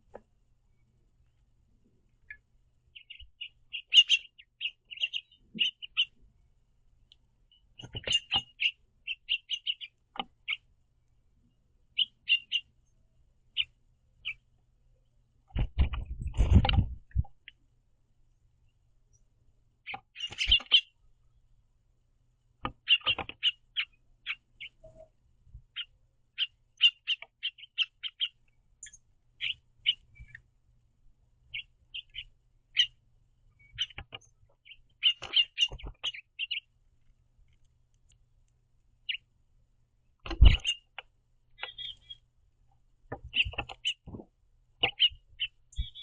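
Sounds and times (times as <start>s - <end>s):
finches chirping: 2.2s - 6.2s, 7.5s - 10.7s, 11.9s - 14.5s, 19.8s - 21.0s, 22.7s - 30.5s, 31.5s - 36.8s, 39.0s - 39.3s, 40.2s - 42.3s, 43.1s - 44.2s, 44.8s - 46.0s
thumps: 15.5s - 17.3s.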